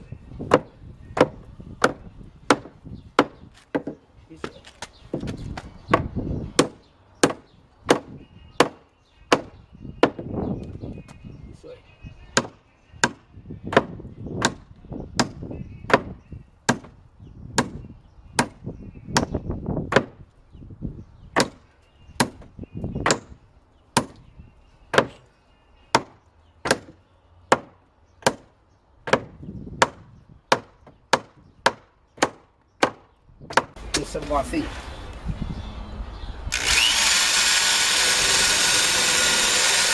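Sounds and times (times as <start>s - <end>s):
hammer striking wood: 0.5s - 4.0s, 5.1s - 10.3s, 12.4s - 14.6s, 16.7s - 17.0s, 19.9s - 20.2s, 21.4s - 21.6s, 22.2s - 23.3s, 24.0s - 24.2s, 24.9s - 25.2s, 26.0s - 33.8s.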